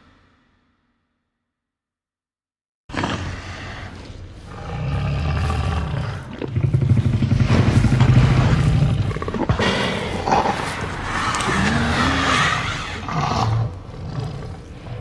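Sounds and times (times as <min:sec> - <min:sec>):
low rattling monster roar: 0:04.5 - 0:15.0.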